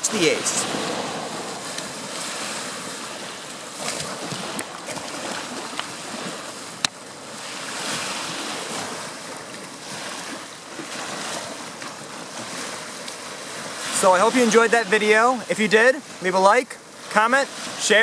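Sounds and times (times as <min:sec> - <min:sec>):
steady rushing noise: 0:00.0 - 0:09.2.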